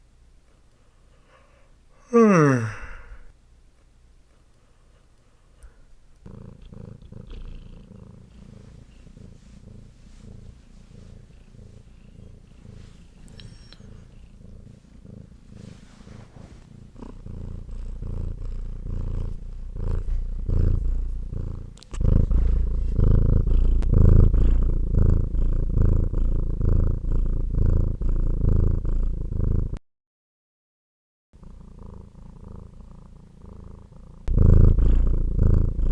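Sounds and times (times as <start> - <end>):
cat purring: 3.8 - 29.8, 31.4 - 35.9.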